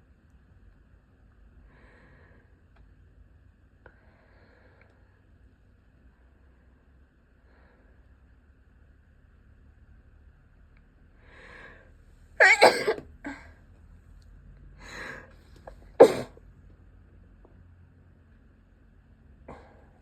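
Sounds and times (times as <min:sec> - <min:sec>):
audible in-breath: 0:01.6 - 0:02.6, 0:03.9 - 0:05.3, 0:07.4 - 0:08.2, 0:11.2 - 0:12.0, 0:14.8 - 0:15.9, 0:19.5 - 0:20.0
person sneezing: 0:12.4 - 0:13.5, 0:15.7 - 0:16.4.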